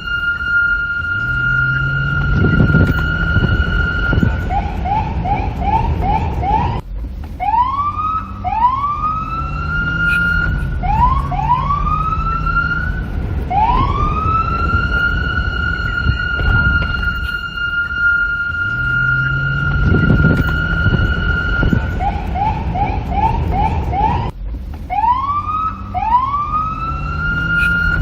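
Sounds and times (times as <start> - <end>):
low background rumble: 0.0 - 28.0
police siren: 0.0 - 28.0.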